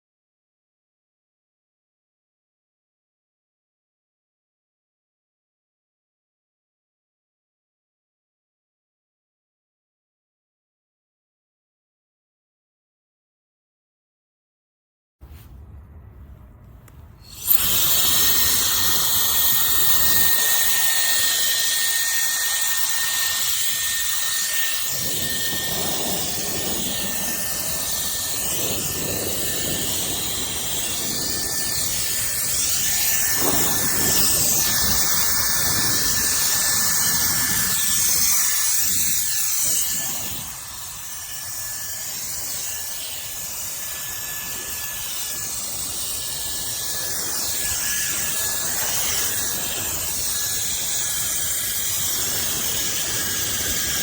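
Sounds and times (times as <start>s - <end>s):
high-pitched motor whine: 16.9s - 54.0s.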